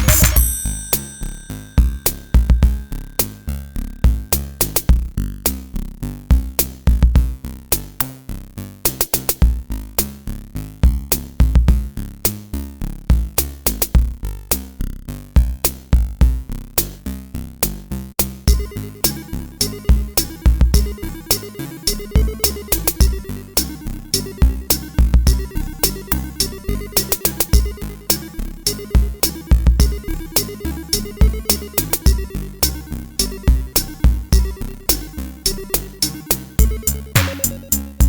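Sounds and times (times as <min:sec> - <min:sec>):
electronic music with drum-machine beat: 0:00.0 - 0:00.8, 0:01.8 - 0:05.2, 0:06.3 - 0:08.0, 0:18.2 - 0:38.0.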